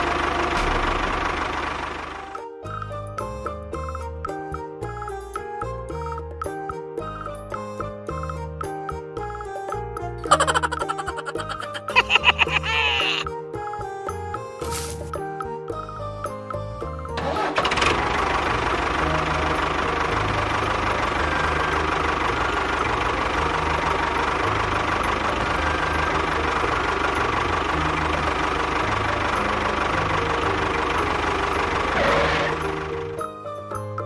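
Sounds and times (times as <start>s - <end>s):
small engine rattling: 17.2s - 33.3s.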